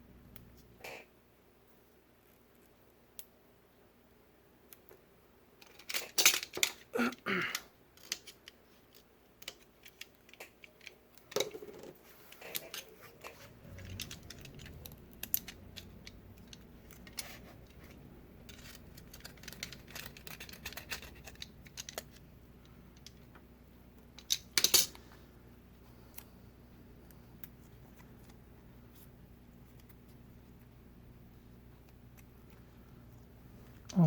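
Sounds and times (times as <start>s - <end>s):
faint low hum: 0.0s - 34.0s
small clicks taps and scratches: 8.0s - 23.5s.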